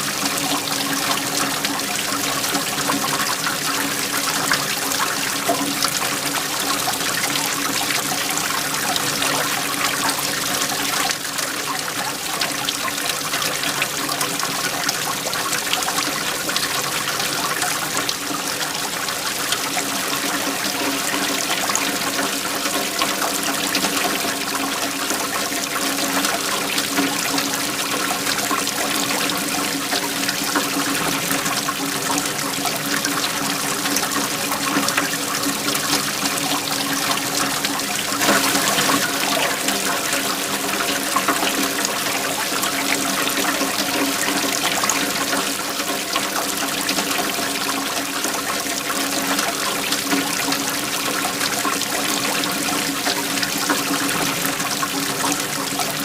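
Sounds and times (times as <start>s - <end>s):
waterfall rushing: 30.1s - 45.9s.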